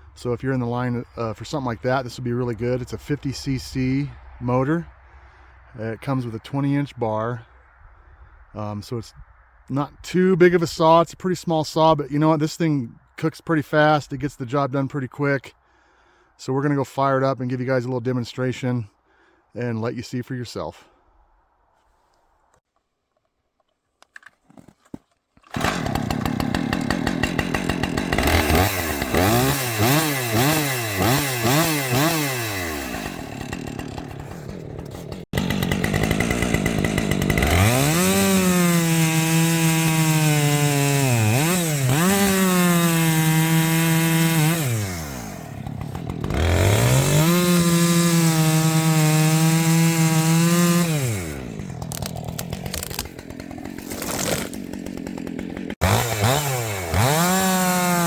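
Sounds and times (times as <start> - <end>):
chainsaw revving and cutting: 25.4 - 58.0.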